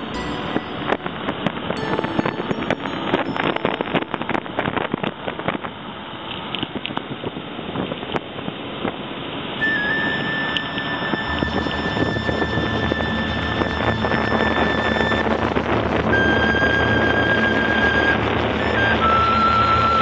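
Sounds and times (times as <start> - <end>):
high whistle-like tone: 0.0 - 5.2, 9.6 - 20.0
wind on microphone: 9.6 - 20.0.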